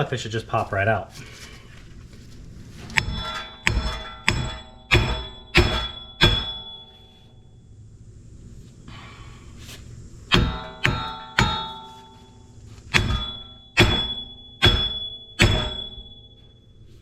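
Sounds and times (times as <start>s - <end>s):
hammer striking steel: 3.0s - 7.3s, 10.3s - 16.7s.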